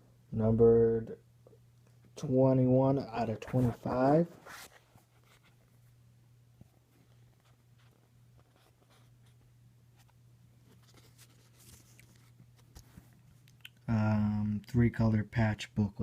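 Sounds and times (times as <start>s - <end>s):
trading cards being handled: 10.6s - 13.7s.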